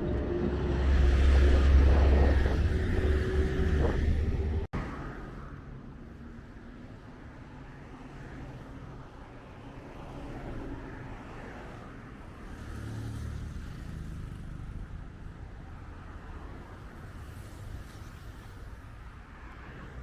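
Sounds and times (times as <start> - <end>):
vehicle passing with low rumble: 0.0 - 5.0
road traffic: 0.0 - 20.0.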